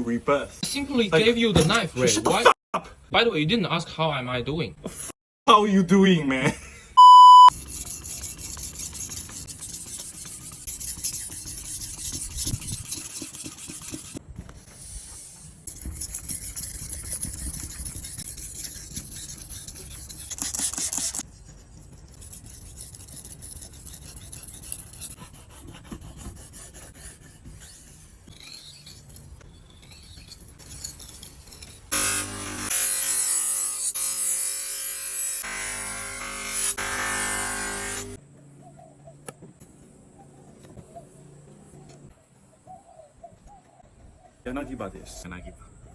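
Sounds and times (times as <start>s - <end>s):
knife blade rasping on whetstone: 7.6s - 14.2s, 15.1s - 32.7s.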